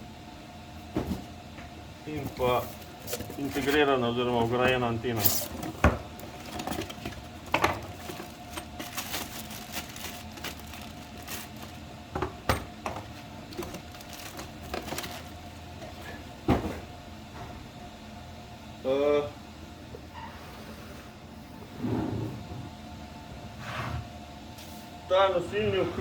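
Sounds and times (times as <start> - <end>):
hardware and packaging handled: 2.1 - 16.2.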